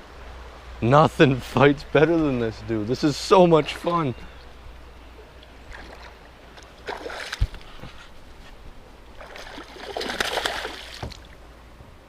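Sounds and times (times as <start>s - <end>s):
water splashing by kayak: 3.6s - 11.4s.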